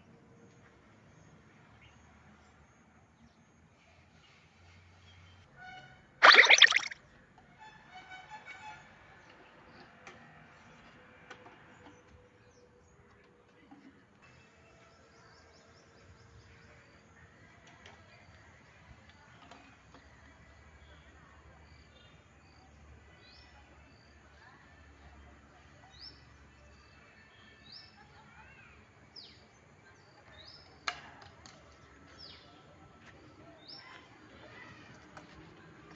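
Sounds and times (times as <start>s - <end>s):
faint bird chirps: 6.2s - 7.0s.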